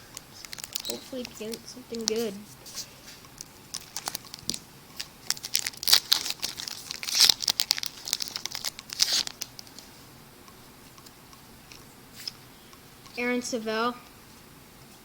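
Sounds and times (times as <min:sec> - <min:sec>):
wrapper tearing and crinkling: 0:00.4 - 0:02.3, 0:03.4 - 0:09.6.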